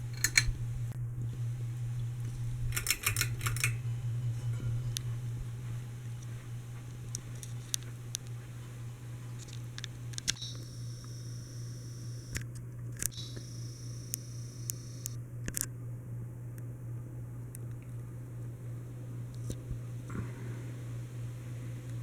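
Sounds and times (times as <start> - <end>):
ceiling fan humming: 0.0 - 22.0
light clicks and ticks: 2.7 - 3.8.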